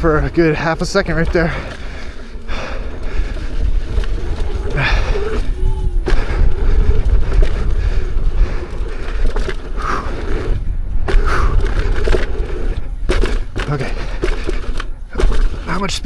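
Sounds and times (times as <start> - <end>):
knocks from bumps: 0.0 - 16.0
tyre rolling over dirt and rocks: 0.0 - 16.0
wind rushing over microphone: 0.0 - 16.0.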